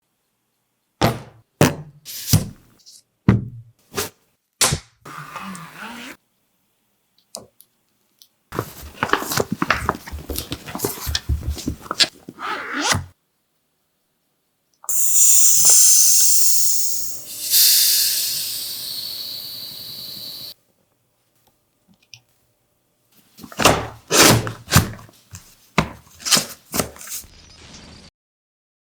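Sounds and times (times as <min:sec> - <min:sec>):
sharp knocks and thuds: 0:01.0 - 0:01.9, 0:09.8 - 0:12.0
loud hiss: 0:14.9 - 0:20.6.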